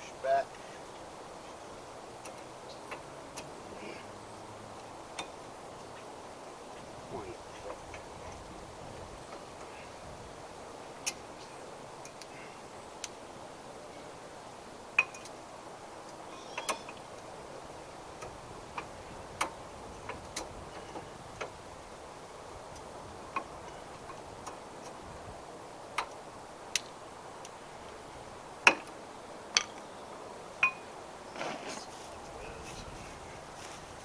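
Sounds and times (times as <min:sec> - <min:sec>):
metallic clicks of brake pads: 0:02.2 - 0:03.6, 0:04.8 - 0:06.1, 0:15.0 - 0:15.4.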